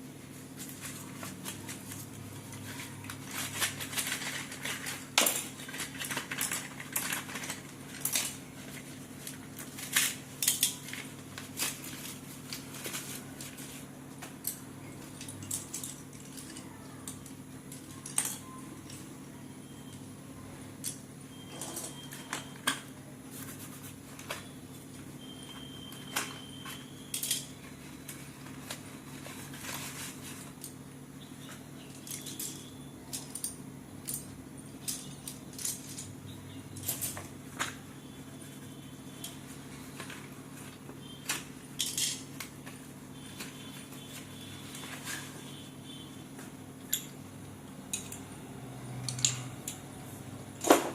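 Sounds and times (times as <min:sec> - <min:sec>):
packaging rustling: 0:00.3 - 0:14.4, 0:25.6 - 0:30.8.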